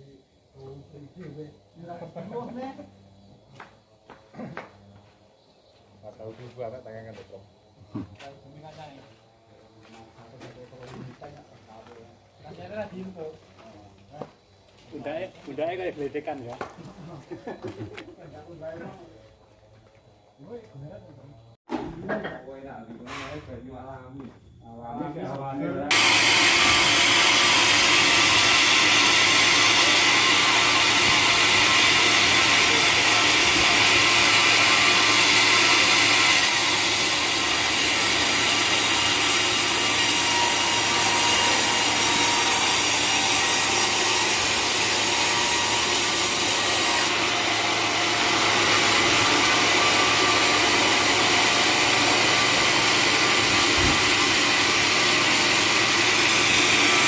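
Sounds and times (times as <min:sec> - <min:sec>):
sawmill blade cutting wood: 0:25.9 - 0:57.0.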